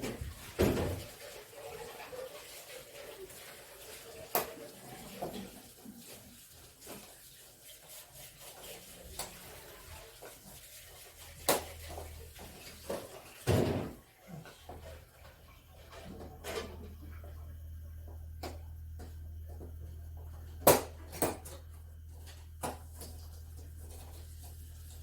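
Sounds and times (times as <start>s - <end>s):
low steady hum: 14.4s - 25.0s.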